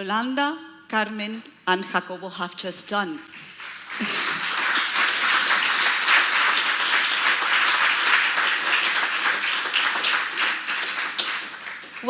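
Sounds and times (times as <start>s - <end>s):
audience applauding: 3.4s - 12.0s.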